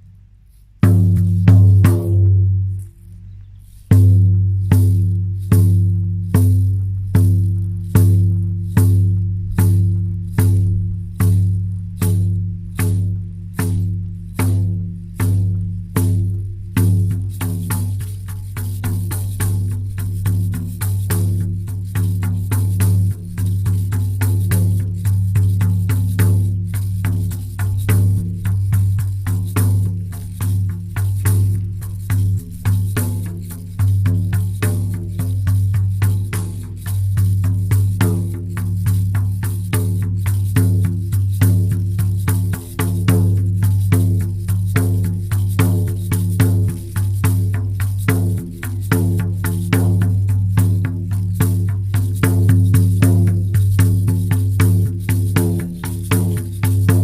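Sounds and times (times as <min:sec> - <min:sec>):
frame drum beaten: 0:00.8 - 0:02.9, 0:03.8 - 0:57.0.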